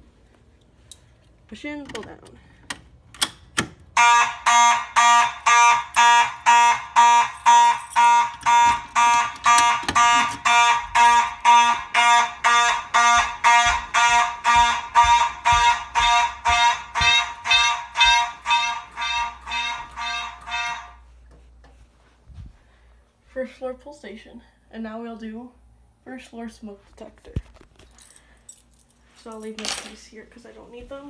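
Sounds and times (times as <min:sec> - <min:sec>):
fire alarm horn pulsing: 0:03.9 - 0:21.2.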